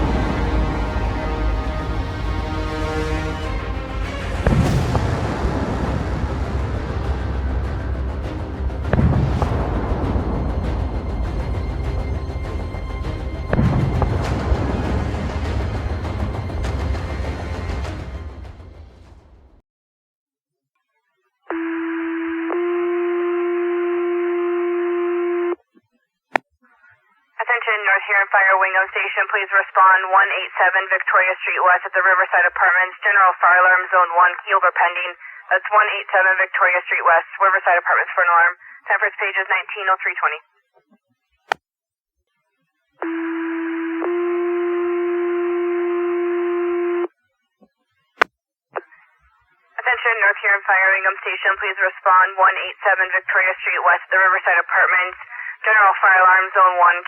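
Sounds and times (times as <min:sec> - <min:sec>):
radio hiss: 0:27.4 - 0:40.4, 0:49.8 - 0:57.0
two-tone pager alert over radio: 0:43.0 - 0:47.1.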